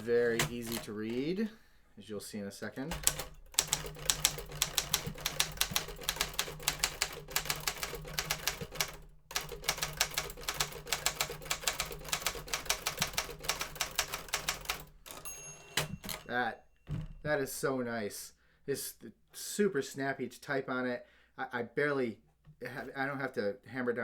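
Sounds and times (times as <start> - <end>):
typewriter keystrokes: 0.0 - 1.3, 2.9 - 16.3
typewriter bell ringing: 12.6 - 16.9.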